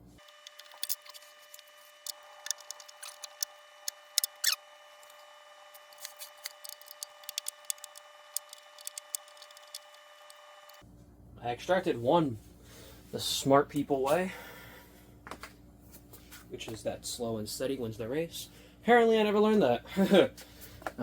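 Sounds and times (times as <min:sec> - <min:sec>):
faint steady hum: 0:00.0 - 0:21.0
clicks and scrapes of parts: 0:00.2 - 0:05.2, 0:05.8 - 0:10.8.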